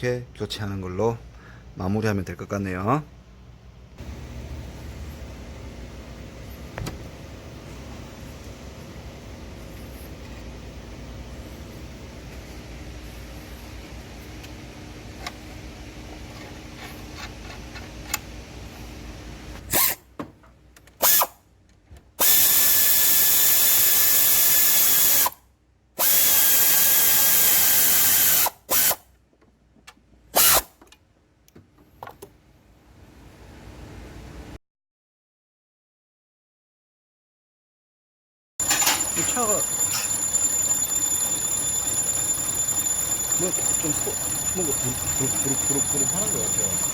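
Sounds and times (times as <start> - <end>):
steady low hum: 0.0 - 19.7, 38.6 - 46.9
power tool whining: 38.6 - 46.9.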